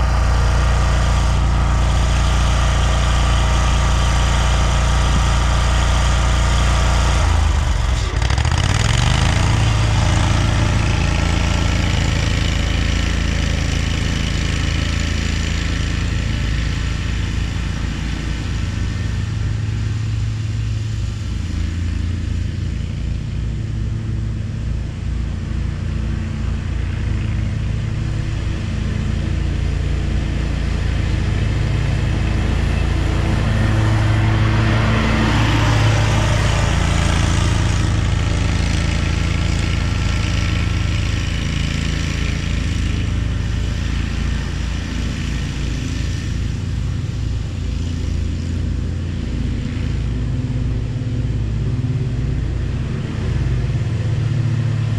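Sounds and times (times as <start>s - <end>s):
engine running: 0.0s - 54.9s.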